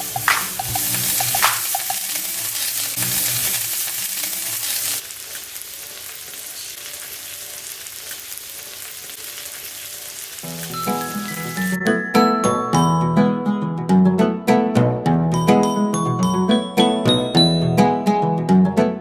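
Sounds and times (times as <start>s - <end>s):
chicken sizzling on griddle: 0.0s - 11.8s.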